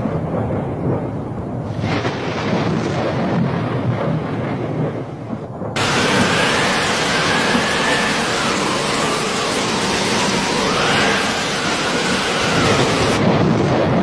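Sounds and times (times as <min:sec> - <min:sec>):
deep rumbling noise: 0:00.0 - 0:14.0
bright hiss with wavering tone: 0:05.8 - 0:13.2.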